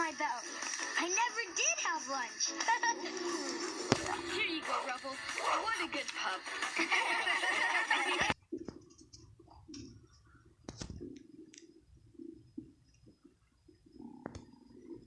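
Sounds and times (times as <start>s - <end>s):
stomach growling: 2.6s - 5.8s, 8.1s - 15.0s.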